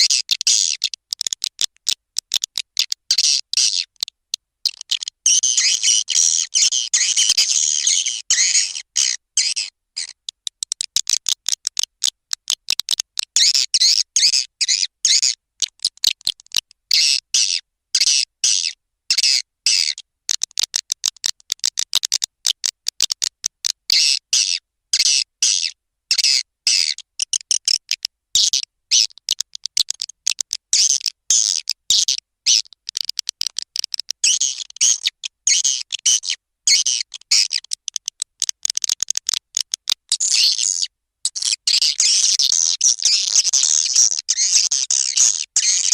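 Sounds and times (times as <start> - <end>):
swiftlet calls chattering: 5.3 - 9.7.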